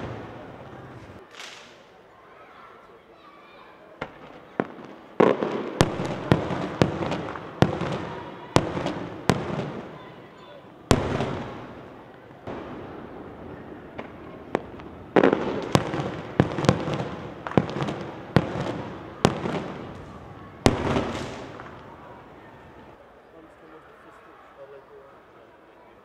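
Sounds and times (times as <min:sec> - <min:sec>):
firework shells bursting: 0:00.0 - 0:02.0, 0:10.9 - 0:22.9.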